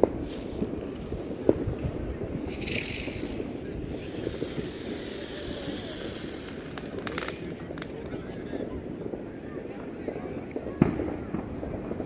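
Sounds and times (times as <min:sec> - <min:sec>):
firework hissing: 0:00.2 - 0:08.2.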